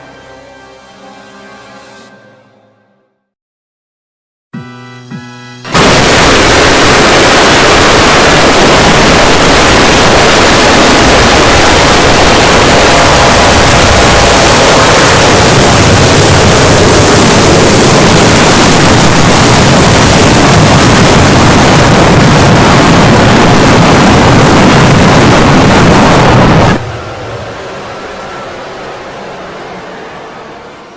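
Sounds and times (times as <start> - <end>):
brief buzzing tone: 4.6 - 6.1
loud distorted noise blast: 5.7 - 30.9.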